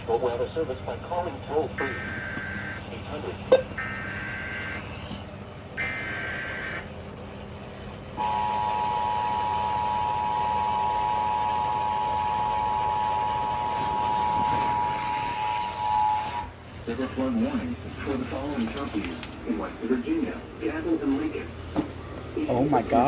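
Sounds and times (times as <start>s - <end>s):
two-tone attention signal: 1.8s - 2.8s, 3.5s - 4.8s, 5.8s - 6.8s, 8.2s - 16.5s.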